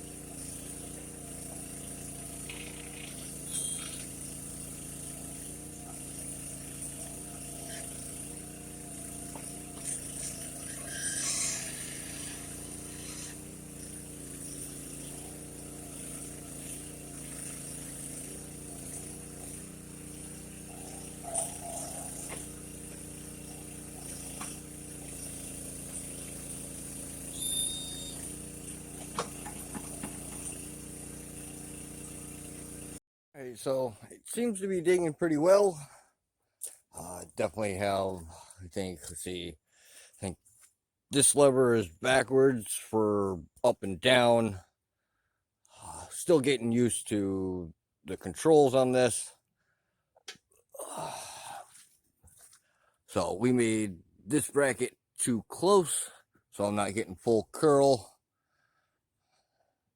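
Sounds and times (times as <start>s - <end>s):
small engine running: 0.0s - 33.0s, 41.2s - 43.0s, 45.8s - 46.6s, 50.3s - 51.8s, 52.4s - 58.8s
bucket scraping soil: 9.2s - 13.8s.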